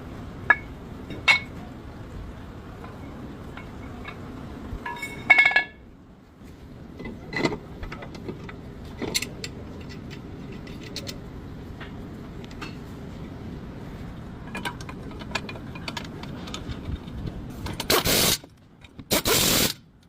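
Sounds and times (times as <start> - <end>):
light clicks and taps of metal parts: 7.0 - 11.2, 14.5 - 19.1.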